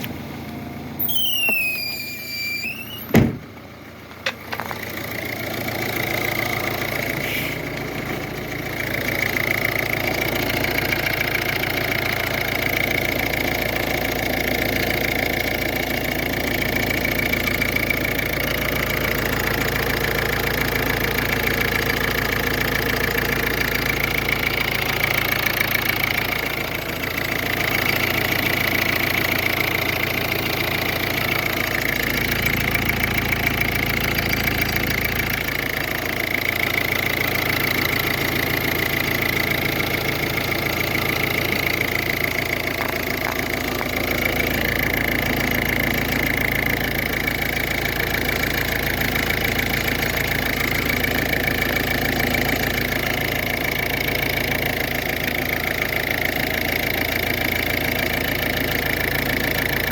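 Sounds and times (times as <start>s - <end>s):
car engine idling: 0.0s - 59.9s.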